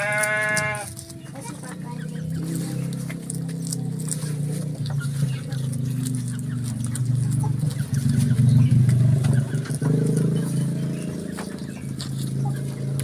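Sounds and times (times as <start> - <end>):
low engine hum: 0.0 - 13.0.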